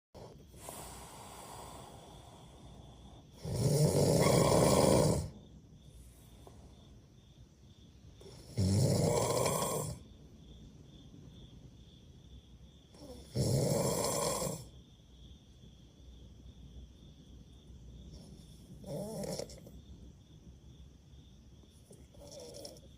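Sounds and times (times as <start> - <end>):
person snoring loudly: 0.2 - 5.4, 8.2 - 10.0, 13.0 - 14.7, 18.8 - 19.7, 22.1 - 22.9
quiet breathing: 0.2 - 7.5, 17.8 - 20.0.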